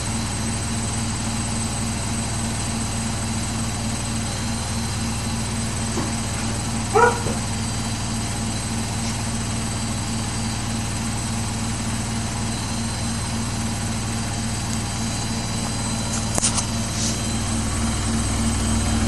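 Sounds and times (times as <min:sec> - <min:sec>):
washing machine drone: 0:00.0 - 0:19.0
washing machine knock: 0:05.9 - 0:07.5.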